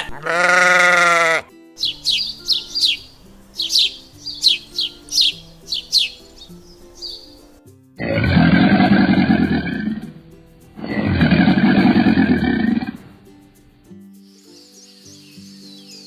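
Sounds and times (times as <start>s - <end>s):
big cat roaring: 8.0s - 10.2s, 10.8s - 13.2s.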